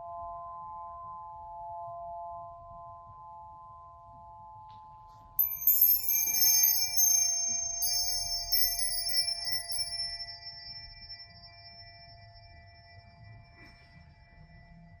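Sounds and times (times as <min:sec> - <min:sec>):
bar chimes ringing: 0:05.4 - 0:11.9
low ringing tones: 0:05.4 - 0:13.2.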